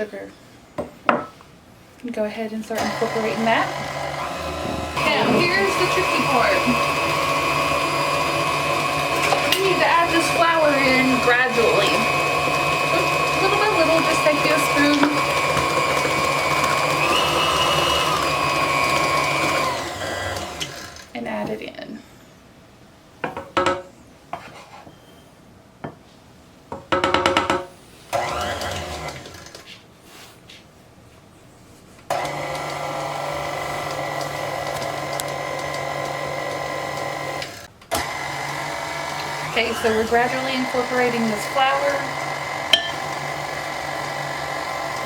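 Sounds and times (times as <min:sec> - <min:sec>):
stand mixer motor whine: 0:02.8 - 0:21.1, 0:28.2 - 0:29.6, 0:32.1 - 0:45.0.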